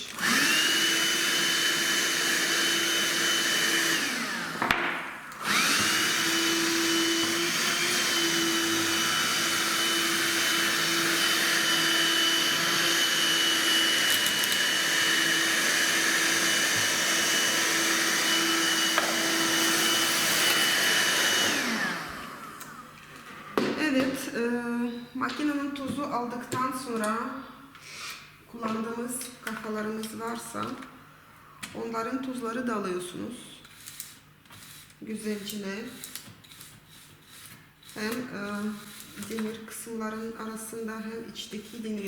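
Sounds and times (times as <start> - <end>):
small vacuum cleaner whining: 0.0 - 23.7.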